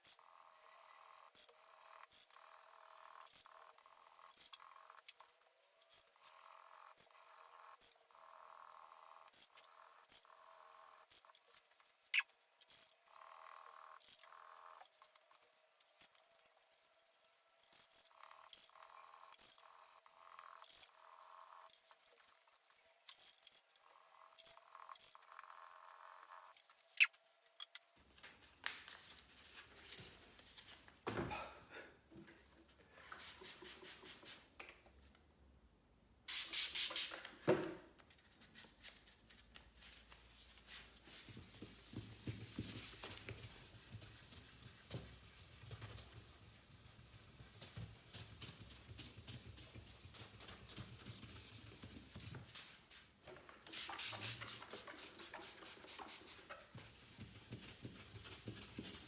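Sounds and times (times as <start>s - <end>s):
sandpaper rubbing car paint: 33.2s - 34.4s, 41.0s - 52.3s, 53.7s - 59.0s.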